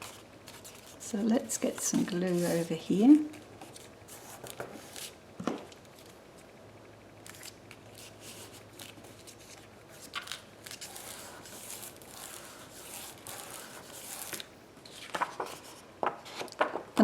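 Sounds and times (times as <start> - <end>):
paper rustling: 7.3 - 16.8.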